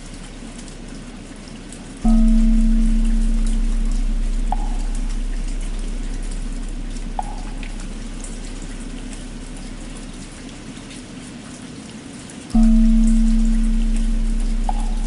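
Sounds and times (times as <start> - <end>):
steady rain falling: 0.0 - 15.0
large bell hum: 2.0 - 10.9, 12.6 - 15.0.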